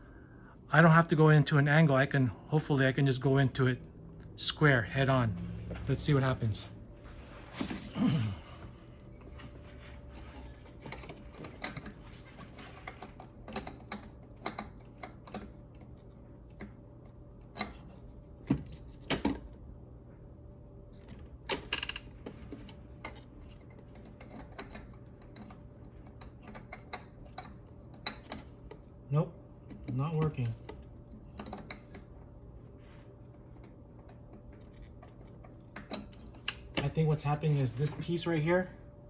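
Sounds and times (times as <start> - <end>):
metal pipe clicking and knocking: 21.5 - 28.8, 30.7 - 32.1.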